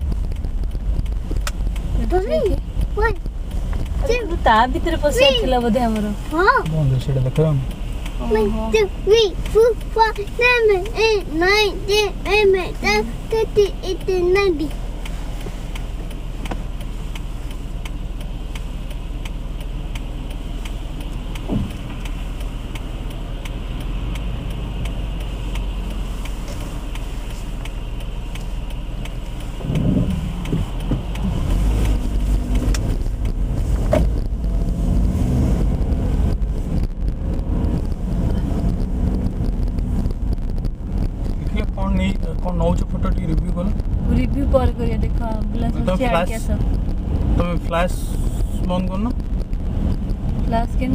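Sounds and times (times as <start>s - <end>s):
car engine and tyre noise: 0.0s - 50.9s.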